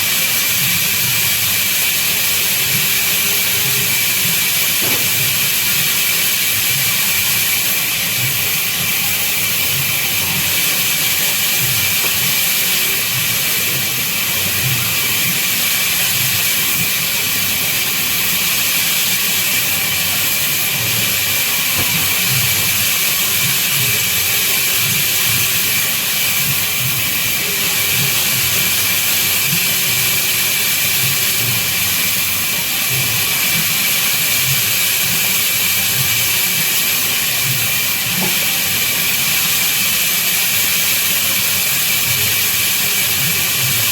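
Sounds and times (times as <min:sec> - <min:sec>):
band saw cutting wood: 0:02.1 - 0:28.7.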